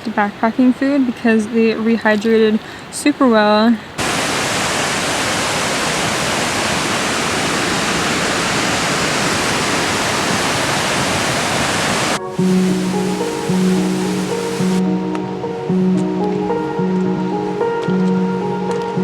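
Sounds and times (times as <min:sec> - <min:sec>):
whitewater rushing: 0:04.0 - 0:14.8.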